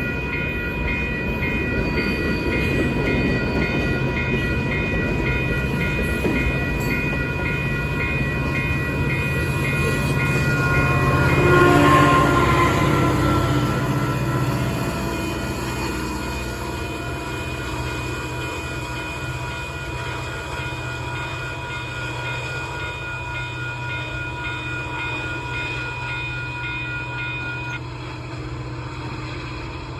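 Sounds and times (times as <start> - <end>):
freight train rumbling past: 0.0 - 29.9.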